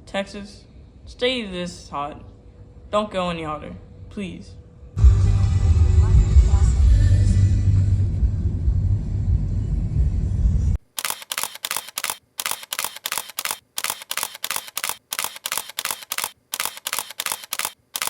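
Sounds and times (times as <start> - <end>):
camera shutter clicks: 10.8 - 18.0.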